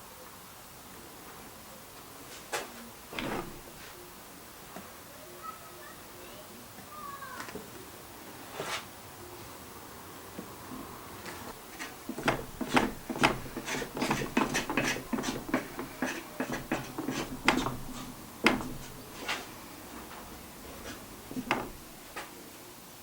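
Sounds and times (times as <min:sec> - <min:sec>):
wooden knocks and clicks: 0:12.1 - 0:19.4, 0:21.3 - 0:22.1.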